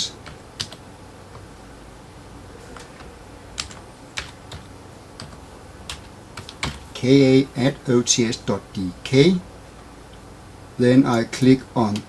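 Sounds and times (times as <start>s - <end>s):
keyboard keys clicking: 0.2s - 1.5s, 2.8s - 6.8s.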